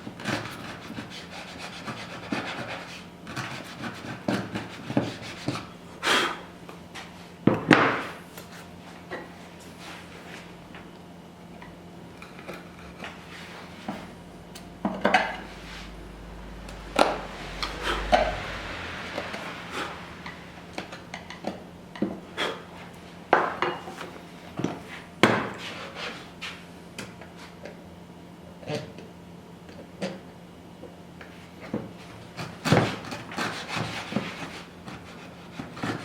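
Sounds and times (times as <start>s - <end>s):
faint hum: 8.2s - 25.3s.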